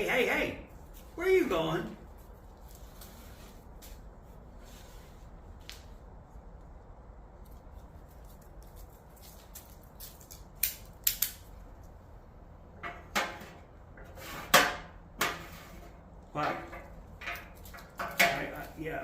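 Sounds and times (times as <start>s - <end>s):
hard objects knocking and clattering: 16.4s - 18.7s.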